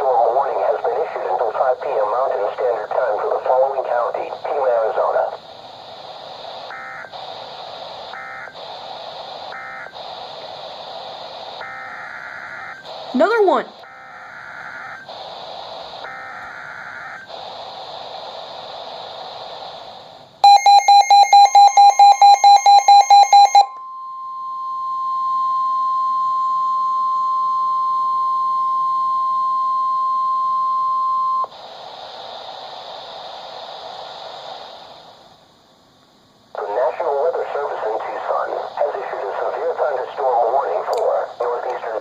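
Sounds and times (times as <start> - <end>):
radio hiss: 0.0 - 21.2, 30.6 - 42.0
steady warning alarm tone: 6.4 - 18.8, 20.4 - 31.6
fast loud beeps: 20.4 - 31.5.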